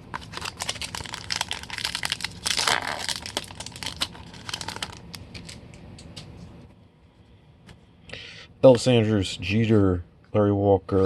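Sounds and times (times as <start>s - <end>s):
wrapper crinkling and tearing: 0.0s - 5.6s.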